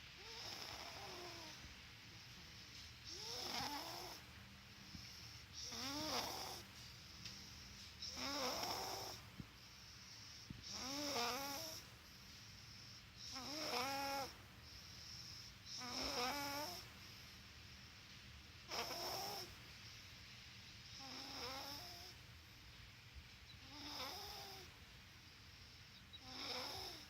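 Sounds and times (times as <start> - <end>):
girl snoring: 0.2 - 1.6, 3.1 - 4.3, 5.6 - 6.7, 8.0 - 9.2, 10.6 - 11.9, 13.2 - 14.4, 15.7 - 16.9, 18.7 - 19.5, 21.0 - 22.2, 23.6 - 24.7, 26.2 - 27.0.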